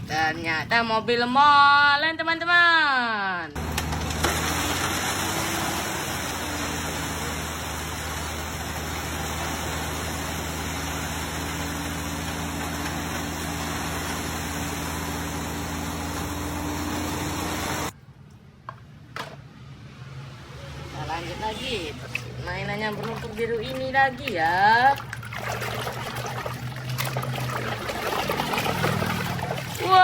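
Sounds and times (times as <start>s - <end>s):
pressure washer running: 3.6s - 17.9s, 23.0s - 30.0s.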